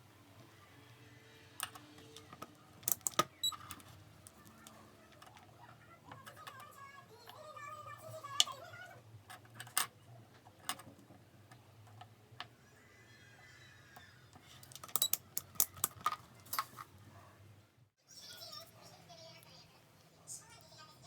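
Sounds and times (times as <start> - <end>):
clicks of small hard objects: 14.4 - 16.9.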